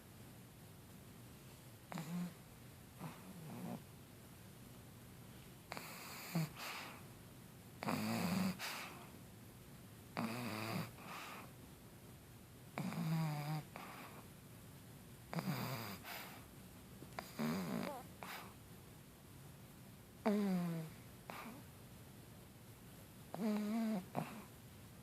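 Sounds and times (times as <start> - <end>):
dog snoring: 1.9 - 2.4, 3.0 - 3.9, 5.7 - 7.0, 7.8 - 9.1, 10.1 - 11.5, 12.7 - 14.3, 15.3 - 16.5, 17.2 - 18.6, 20.2 - 21.6, 23.3 - 24.5.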